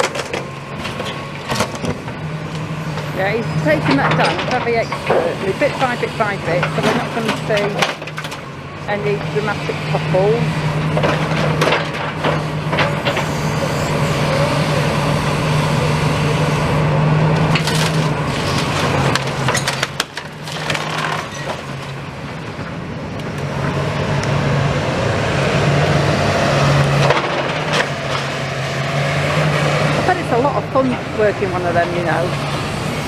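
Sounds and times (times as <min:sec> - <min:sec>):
excavator engine running: 0:00.0 - 0:33.0
debris crunching and cracking: 0:10.9 - 0:13.4, 0:17.4 - 0:23.8, 0:26.8 - 0:29.4.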